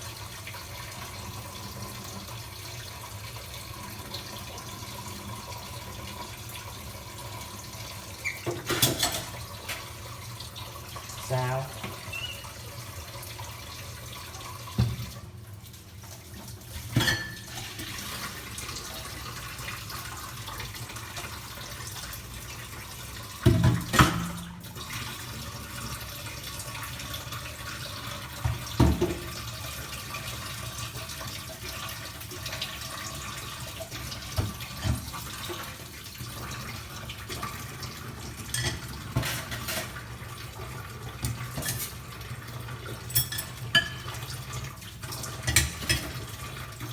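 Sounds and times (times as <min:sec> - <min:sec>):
tap water running into sink: 0:00.0 - 0:46.9
dishes clinking against sink: 0:08.2 - 0:09.9, 0:14.8 - 0:15.2, 0:16.8 - 0:18.0, 0:23.4 - 0:24.6, 0:28.4 - 0:29.4, 0:38.4 - 0:40.1, 0:41.2 - 0:42.1, 0:42.9 - 0:46.4.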